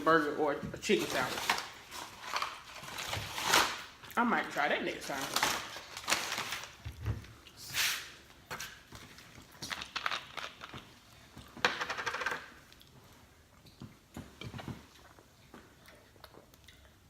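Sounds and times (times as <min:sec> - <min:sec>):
chewing and wet mouth clicks: 0:14.9 - 0:17.0.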